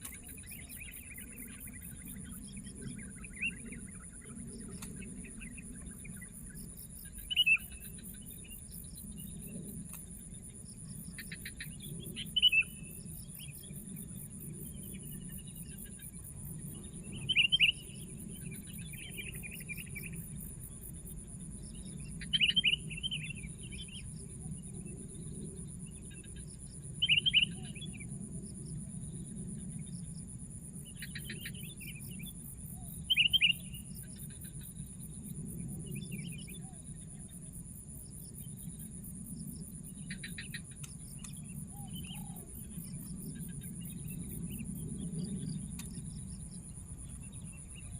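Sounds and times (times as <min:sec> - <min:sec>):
high insect trill: 0:00.0 - 0:47.9.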